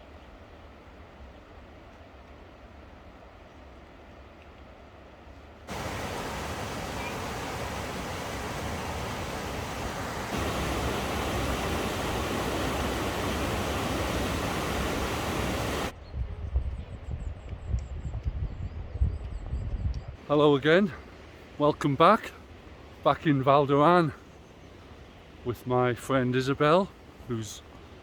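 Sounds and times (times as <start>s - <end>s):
waterfall rushing: 5.7s - 15.9s.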